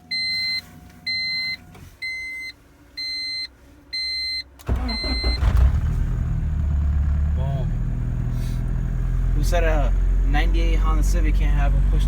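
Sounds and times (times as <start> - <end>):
car electronics beeping: 0.0 - 5.7
car engine cranking and running: 4.6 - 12.0.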